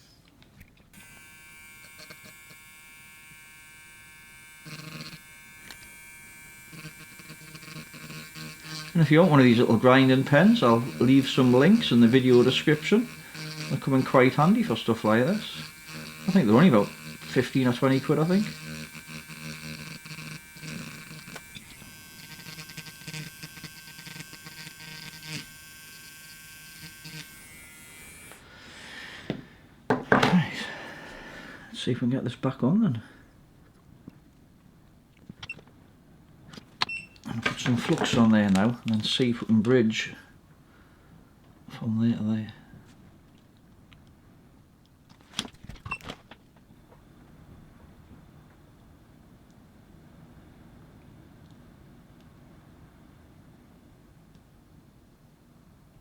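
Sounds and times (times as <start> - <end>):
electric grinding pen whine: 0.9 - 28.6, 37.2 - 39.7.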